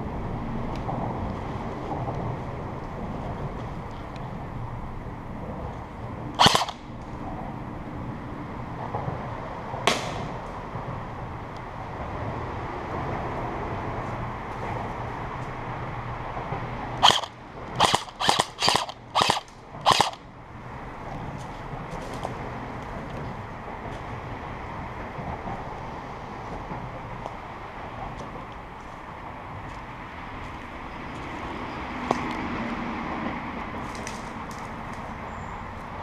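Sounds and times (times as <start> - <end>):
airsoft gun shots: 6.4 - 6.8, 9.9 - 10.3, 17.0 - 20.2.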